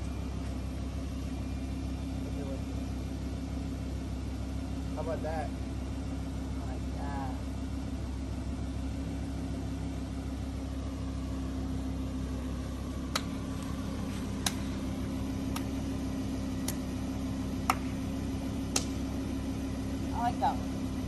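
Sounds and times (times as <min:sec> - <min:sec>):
car engine idling: 0:00.0 - 0:21.0
sharp clicks: 0:16.6 - 0:16.8.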